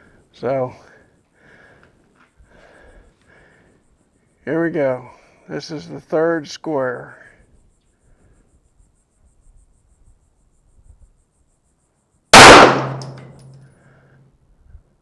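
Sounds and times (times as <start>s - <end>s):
pistol shot with echo: 12.3s - 13.4s.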